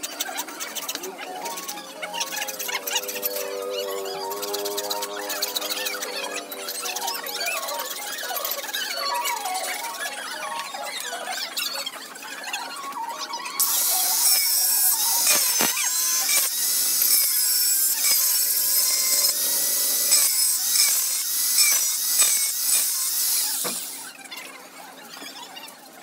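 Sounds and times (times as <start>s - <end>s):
tool cutting metal with high hiss: 13.6s - 24.1s.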